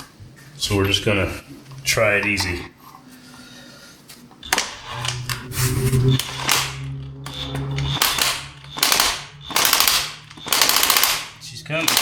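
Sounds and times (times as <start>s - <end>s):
motor hum: 0.0s - 12.0s
impact wrench hammering: 4.4s - 12.0s.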